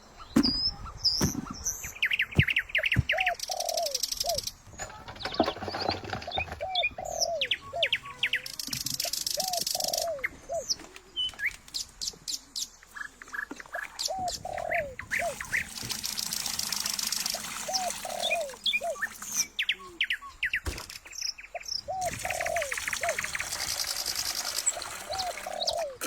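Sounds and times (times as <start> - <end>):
birds chirping: 0.0 - 26.0.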